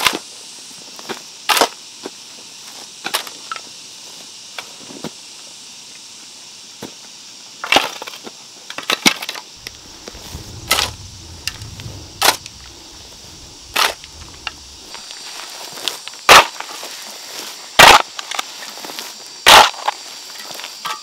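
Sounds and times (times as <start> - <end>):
faint low rumble: 9.6 - 15.5.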